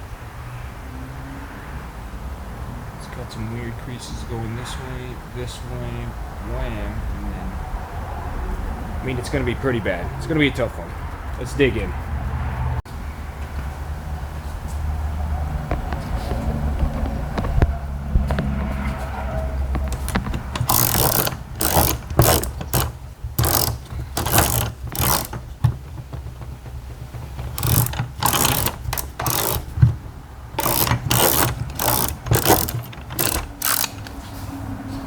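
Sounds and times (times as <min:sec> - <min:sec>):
rasping mechanical strokes: 0:19.8 - 0:34.2.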